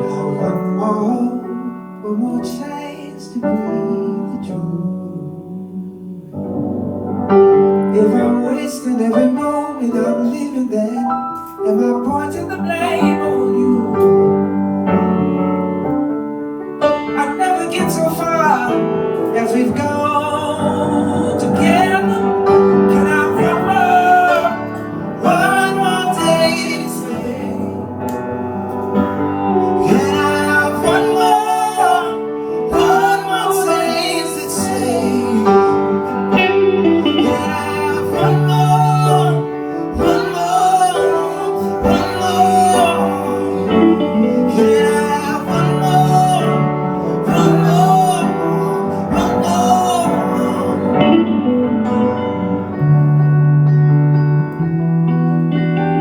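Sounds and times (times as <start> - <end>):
guitar accompaniment: 5.2 - 56.0
person singing: 7.9 - 14.6, 16.8 - 53.1.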